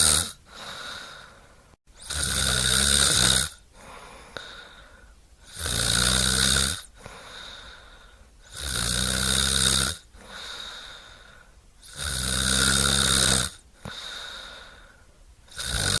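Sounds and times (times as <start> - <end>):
quiet breaths: 0.0 - 2.1, 3.6 - 5.8, 6.8 - 8.9, 9.5 - 12.2, 13.5 - 16.0
person snoring: 0.0 - 16.0.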